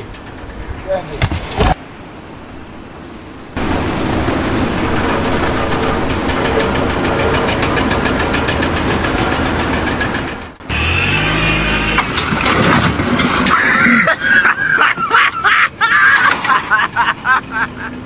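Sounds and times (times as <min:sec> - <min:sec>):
machine rhythmic clatter: 0:04.6 - 0:10.6.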